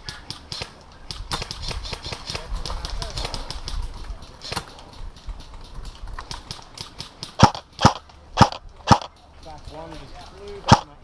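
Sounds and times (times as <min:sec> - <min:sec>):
patter of clicks: 0:00.1 - 0:07.4
airsoft gun shots: 0:06.3 - 0:09.1, 0:10.6 - 0:11.0.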